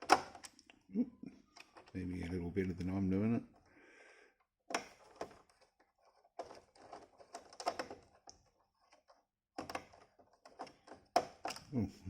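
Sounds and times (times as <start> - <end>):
small clicks and scrapes of parts: 1.5 - 3.0, 4.7 - 11.7.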